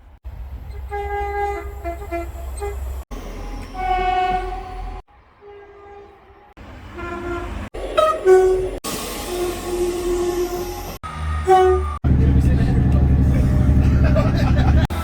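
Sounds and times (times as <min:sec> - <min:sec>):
train horn blasts: 0:00.9 - 0:02.8, 0:03.4 - 0:10.8, 0:11.4 - 0:12.0.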